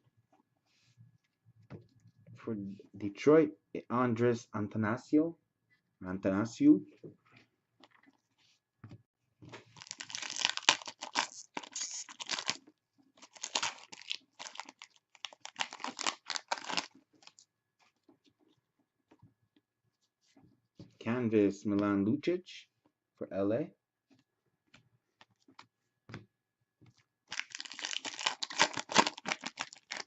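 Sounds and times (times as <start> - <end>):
trading cards crinkling and rustling: 9.5 - 18.0, 26.9 - 30.0.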